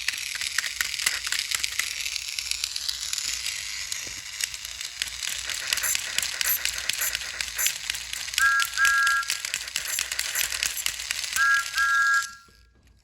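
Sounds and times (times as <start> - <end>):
toy train hissing and clicking: 0.0 - 12.4.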